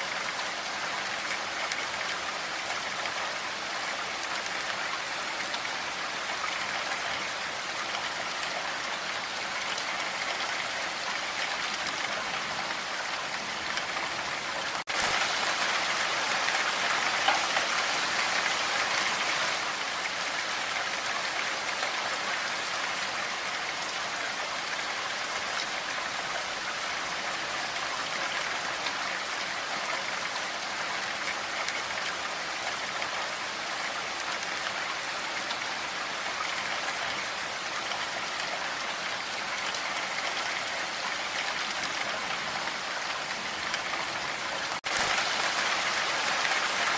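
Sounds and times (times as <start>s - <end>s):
steady rain falling: 0.0s - 46.9s.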